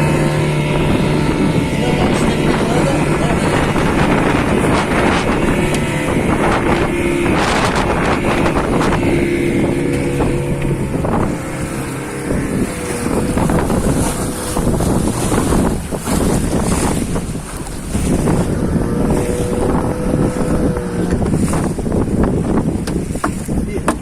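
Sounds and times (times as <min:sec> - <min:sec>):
boat engine running: 0:00.0 - 0:24.0
wind buffeting microphone: 0:00.0 - 0:24.0
knocks: 0:22.8 - 0:24.0.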